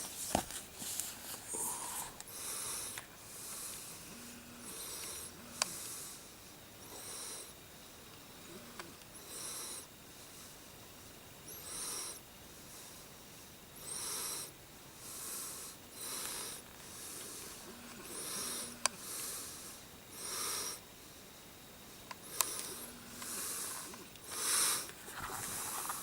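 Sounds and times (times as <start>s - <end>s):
person breathing heavily: 0.8s - 7.6s, 13.9s - 20.8s, 22.2s - 26.0s.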